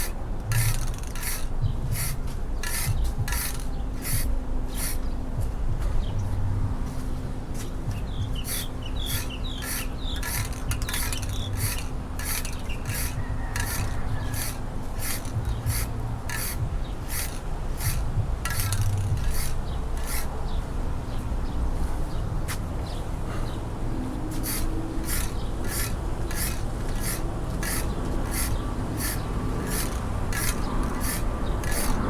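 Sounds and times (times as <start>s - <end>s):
hand rubbing boat hull: 0.0s - 5.0s, 8.0s - 20.3s, 24.3s - 32.0s.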